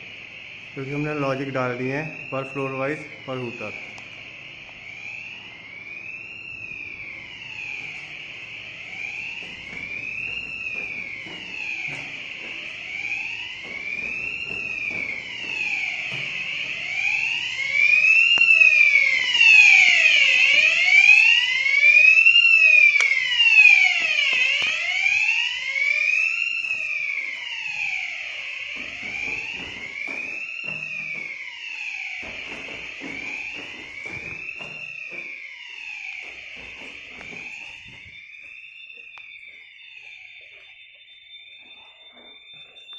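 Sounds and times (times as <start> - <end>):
fire alarm hooter wailing: 0.0 - 42.9.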